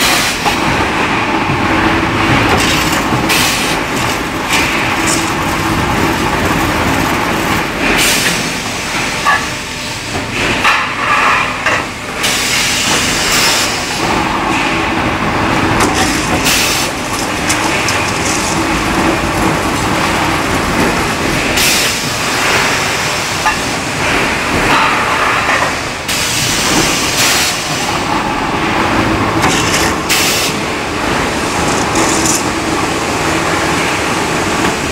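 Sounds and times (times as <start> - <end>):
metal being worked: 2.4 - 8.5, 15.8 - 22.6, 31.1 - 32.7
machine motor hum: 28.0 - 34.8.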